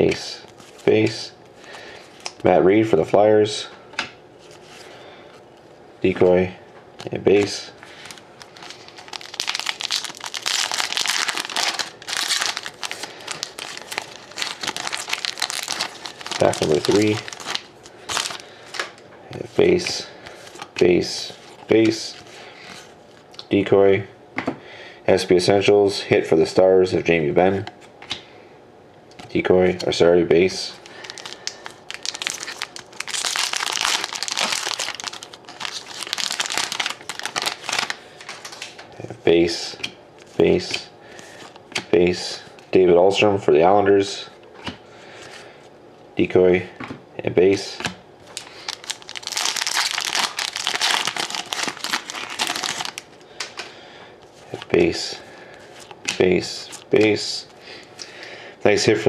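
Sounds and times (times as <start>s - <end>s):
wrapper crinkling: 7.3s - 19.0s, 30.7s - 38.9s, 48.3s - 57.9s.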